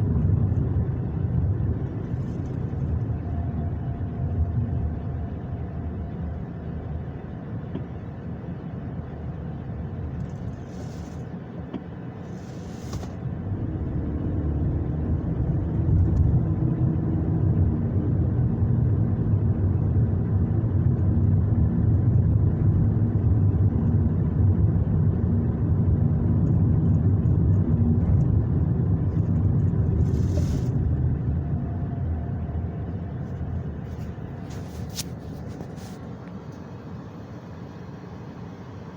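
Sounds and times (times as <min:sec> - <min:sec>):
car interior rumble: 0:00.0 - 0:38.5.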